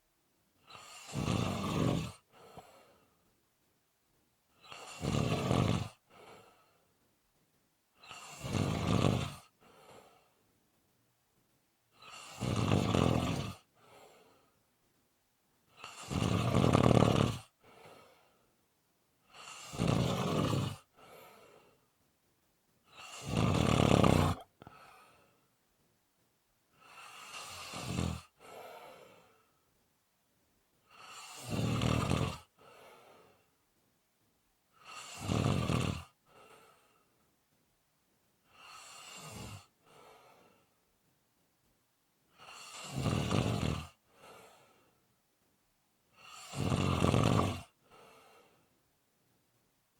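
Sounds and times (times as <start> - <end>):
quiet breath: 0.6 - 3.4, 4.5 - 7.1, 7.9 - 10.8, 11.9 - 14.8, 17.4 - 22.1, 22.8 - 25.6, 26.7 - 29.8, 30.8 - 33.6, 36.0 - 37.4, 38.4 - 41.0, 42.3 - 45.2, 47.6 - 48.9
person snoring: 0.7 - 2.3, 4.6 - 6.0, 8.0 - 9.5, 12.0 - 13.7, 15.8 - 17.5, 19.3 - 21.5, 22.9 - 25.2, 26.8 - 29.3, 30.9 - 32.5, 34.8 - 36.2, 38.5 - 40.3, 42.4 - 44.7, 46.2 - 47.8.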